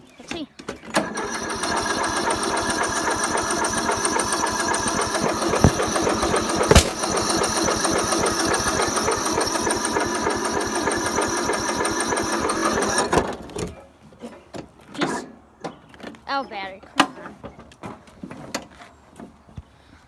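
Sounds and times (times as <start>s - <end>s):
lawnmower starter cranking: 0.9s - 13.5s
sharp clicks: 2.6s - 13.0s.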